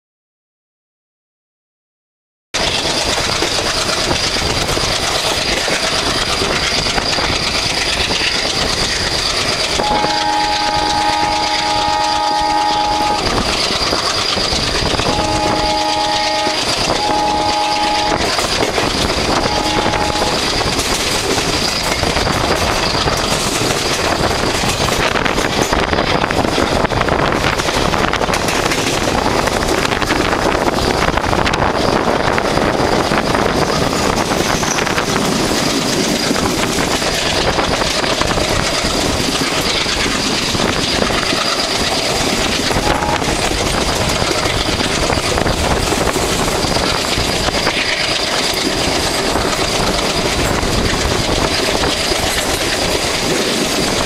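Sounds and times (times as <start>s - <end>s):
diesel locomotive engine chugging: 2.6s - 54.0s
train on the rails: 2.6s - 54.0s
multi-tone train horn: 9.8s - 13.6s, 15.0s - 20.6s, 42.8s - 43.5s.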